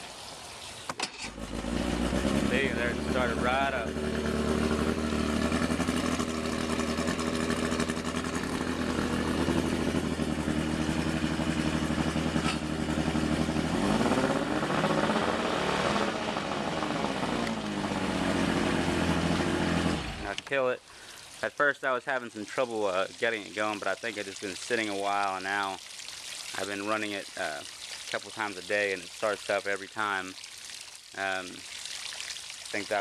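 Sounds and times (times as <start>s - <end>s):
outboard motor running: 1.2s - 21.2s.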